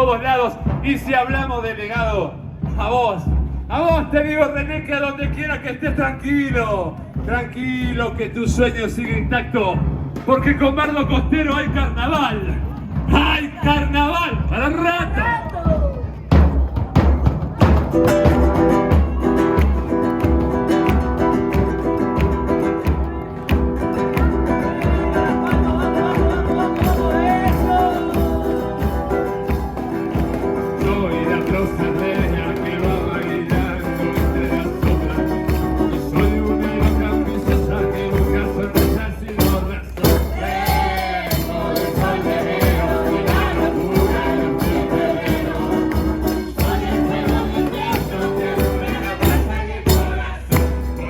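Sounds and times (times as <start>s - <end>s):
drum beat: 0.0s - 51.0s
music with guitar and percussion: 15.6s - 51.0s
person singing: 22.8s - 51.0s.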